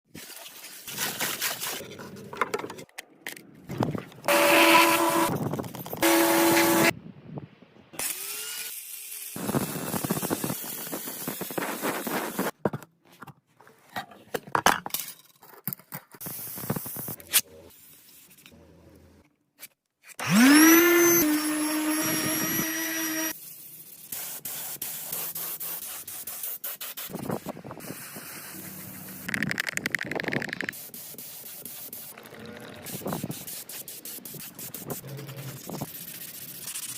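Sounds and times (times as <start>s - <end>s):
scraping and rubbing: 0.2s - 6.9s, 31.6s - 36.9s
power tool high whine: 4.3s - 5.3s, 6.0s - 6.9s, 20.2s - 23.3s.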